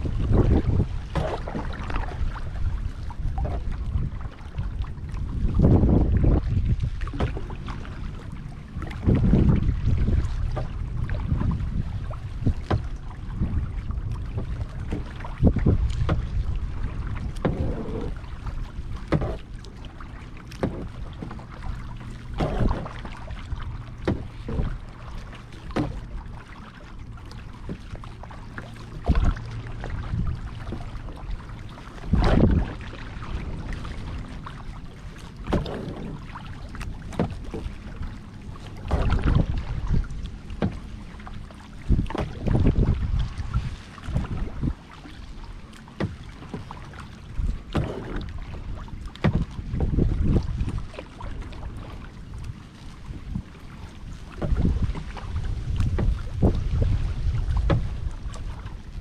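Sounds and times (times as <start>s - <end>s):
paddle splashes and drips: 0.0s - 59.0s.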